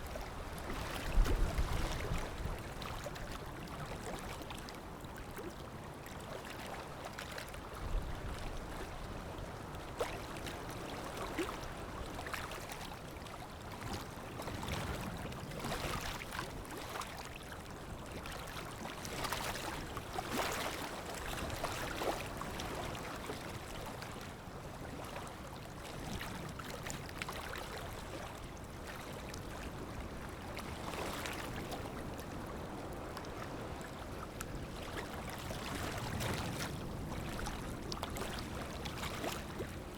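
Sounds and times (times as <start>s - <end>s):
sea water lapping and splashing: 0.0s - 39.9s.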